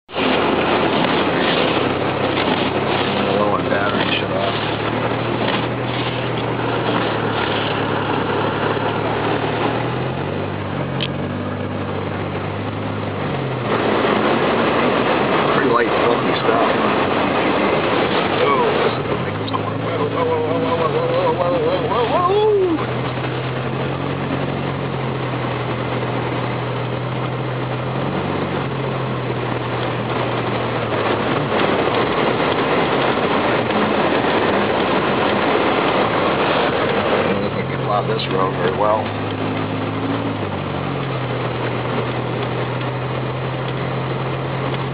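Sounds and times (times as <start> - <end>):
constant rushing noise: 0.0 - 44.9
vehicle engine low hum: 0.1 - 44.9.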